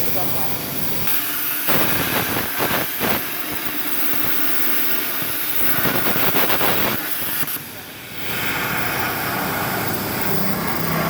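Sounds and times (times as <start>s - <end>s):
plasma torch cutting steel: 0.0s - 11.0s.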